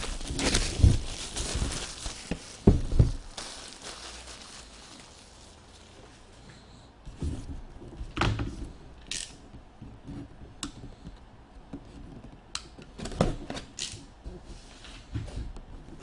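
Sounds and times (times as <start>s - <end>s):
packaging rustling and scraping: 0.0s - 6.5s.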